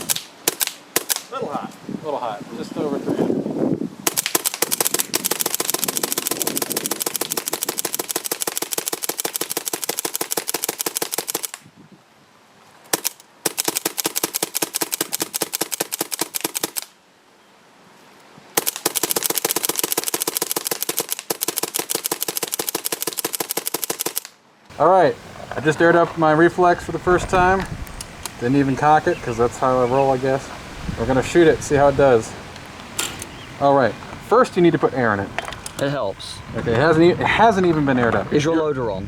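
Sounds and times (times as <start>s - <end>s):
paintball marker firing: 0.0s - 1.3s.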